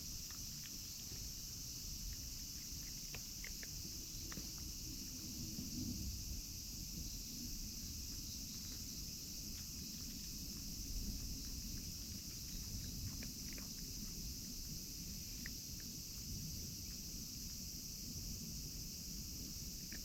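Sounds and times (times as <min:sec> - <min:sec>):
insects chirring: 0:00.0 - 0:20.0
faint small clicks: 0:02.0 - 0:04.7, 0:19.8 - 0:20.0.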